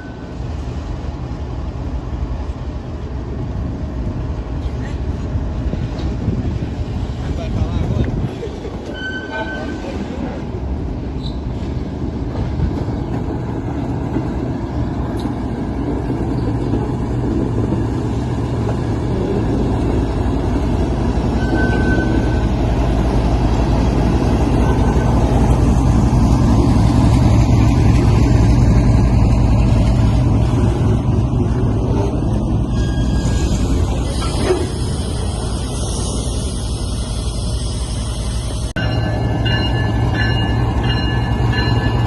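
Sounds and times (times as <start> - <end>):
locomotive engine drone: 11.8 - 42.0.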